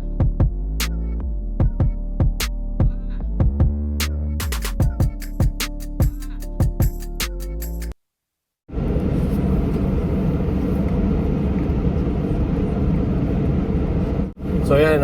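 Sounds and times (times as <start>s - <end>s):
electronic background music: 0.0s - 8.0s
car engine rumbling: 8.7s - 15.0s.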